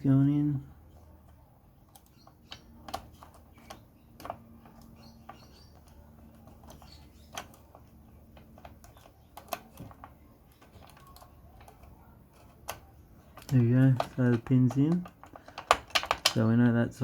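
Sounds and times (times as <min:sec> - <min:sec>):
plastic and metal latch clicks: 0:08.4 - 0:16.4.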